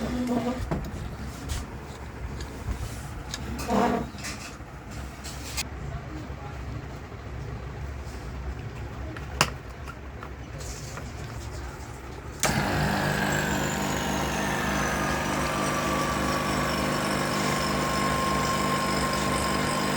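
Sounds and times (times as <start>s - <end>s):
vacuum pump whining: 12.4s - 19.9s.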